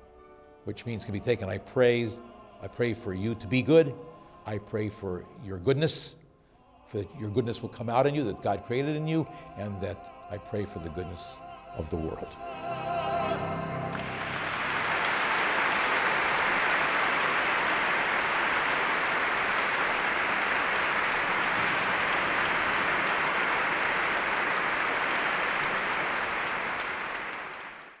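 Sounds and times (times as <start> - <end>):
audience applauding: 13.9 - 28.0.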